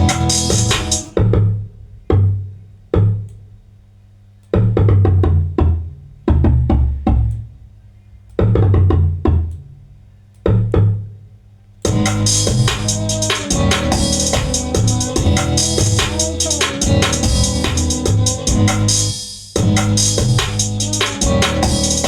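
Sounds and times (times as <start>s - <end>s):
full dance beat: 0.0s - 1.2s, 11.9s - 22.0s
deep bass-drum hits: 0.0s - 1.7s, 11.9s - 22.0s.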